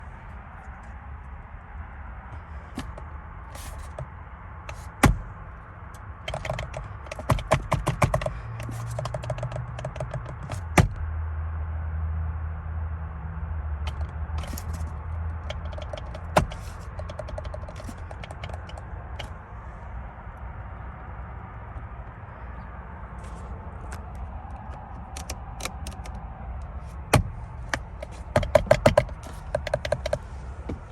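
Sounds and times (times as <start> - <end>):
plastic horn pad clicks: 6.3 - 11.0, 13.9 - 19.3, 23.9 - 30.3.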